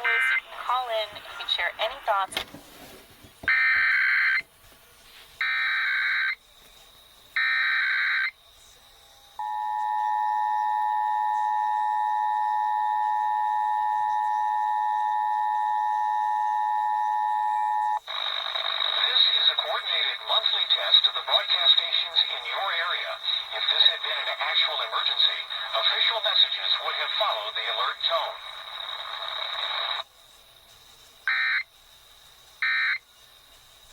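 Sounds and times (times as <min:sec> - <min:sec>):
screeching digital data bursts: 0:05.4 - 0:06.4, 0:07.4 - 0:08.4, 0:18.0 - 0:30.0, 0:31.3 - 0:31.7, 0:32.6 - 0:33.0
man speaking: 0:19.0 - 0:28.5.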